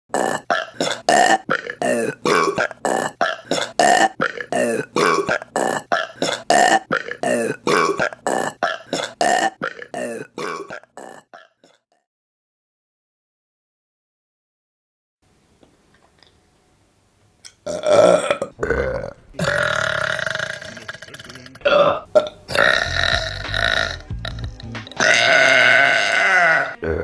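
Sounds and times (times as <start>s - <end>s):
short burps: 0.1s - 11.8s, 17.7s - 27.0s.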